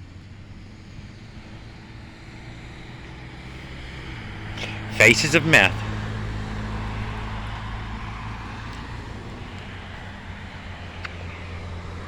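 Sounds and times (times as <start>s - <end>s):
road noise: 3.6s - 12.0s.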